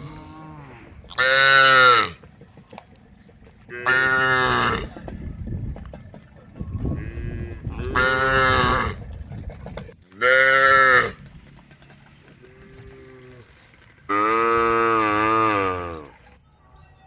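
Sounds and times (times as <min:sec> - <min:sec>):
cows mooing: 0:00.0 - 0:02.2, 0:03.7 - 0:05.0, 0:06.9 - 0:09.0, 0:10.1 - 0:11.2, 0:12.3 - 0:16.2.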